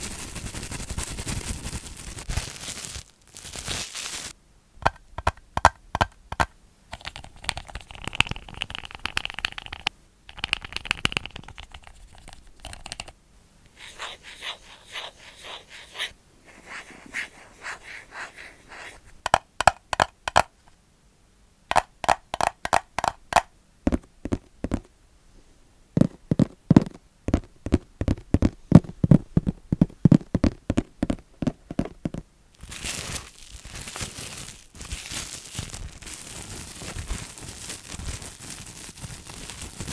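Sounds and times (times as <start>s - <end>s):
scratchy rubbing: 0.0s - 2.3s, 11.2s - 13.1s, 13.7s - 19.3s
tapping on hard objects: 4.8s - 7.6s, 19.2s - 20.5s, 21.7s - 24.9s.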